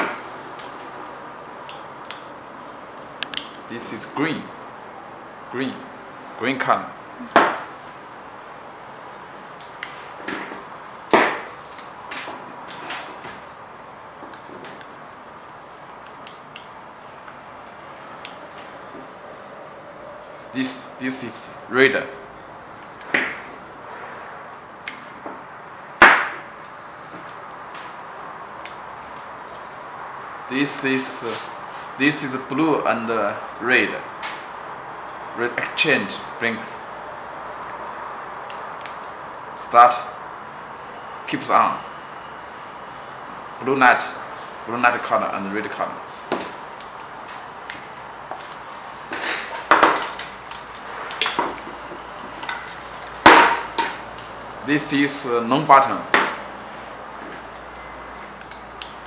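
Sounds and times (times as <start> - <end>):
hard parts knocking: 49.1 - 50.4.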